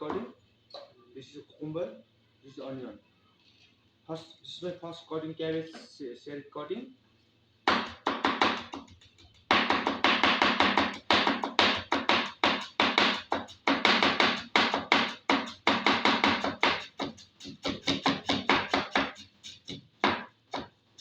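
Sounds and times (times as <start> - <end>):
knife chopping on cutting board: 7.7 - 20.8.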